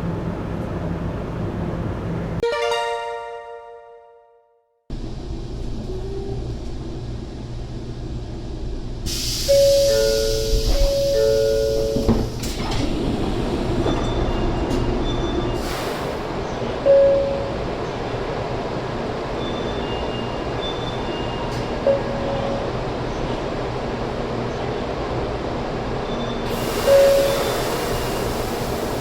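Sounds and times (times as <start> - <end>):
two-tone door chime: 9.5 - 12.3, 26.8 - 27.6.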